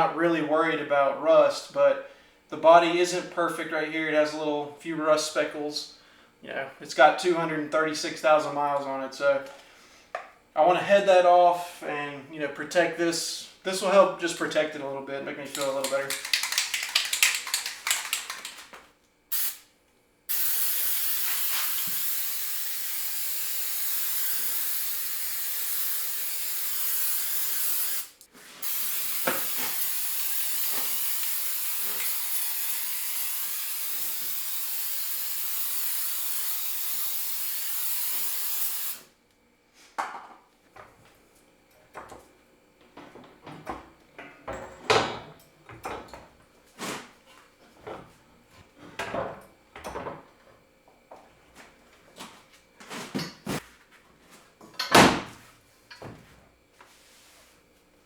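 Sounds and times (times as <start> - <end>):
aerosol can spraying: 19.3 - 19.6, 20.3 - 39.0.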